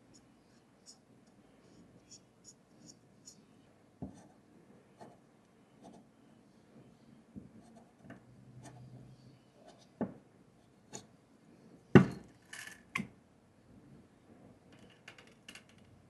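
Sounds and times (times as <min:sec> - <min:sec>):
loud knock on counter: 0:12.0 - 0:12.2.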